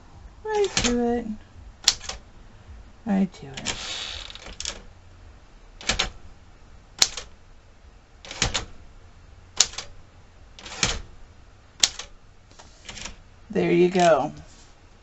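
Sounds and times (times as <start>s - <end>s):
typewriter carriage clacking: 0.6s - 1.0s, 1.8s - 2.2s, 3.6s - 4.8s, 5.8s - 6.2s, 7.0s - 7.3s, 8.3s - 8.7s, 9.6s - 9.9s, 10.6s - 11.1s, 11.8s - 12.1s, 12.8s - 13.2s.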